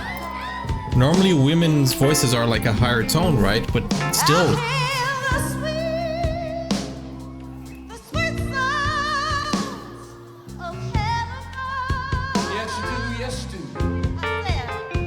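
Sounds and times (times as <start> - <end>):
person singing with vibrato: 0.0 - 7.1
live rock band playing a ballad: 0.0 - 15.0.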